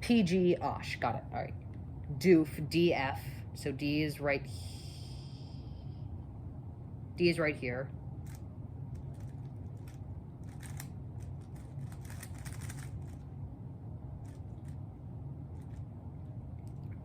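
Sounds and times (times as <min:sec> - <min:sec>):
low steady hum: 0:00.0 - 0:17.0
puzzle cube plastic clicks: 0:08.3 - 0:13.2.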